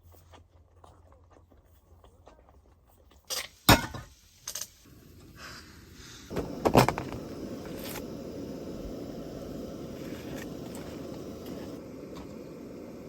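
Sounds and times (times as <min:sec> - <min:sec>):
steady rushing noise: 0:06.3 - 0:13.0.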